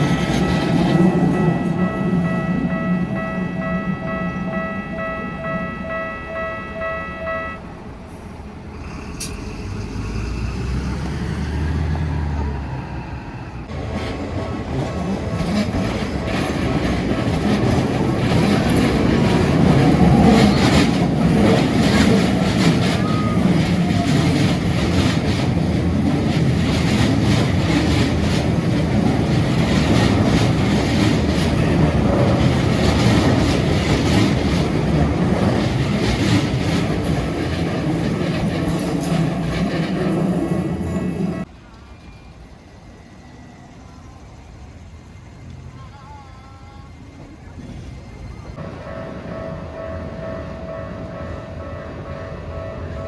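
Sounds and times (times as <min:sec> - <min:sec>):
level crossing bell clanging: 0:00.0 - 0:08.0, 0:16.2 - 0:41.5
train passing: 0:00.0 - 0:53.0.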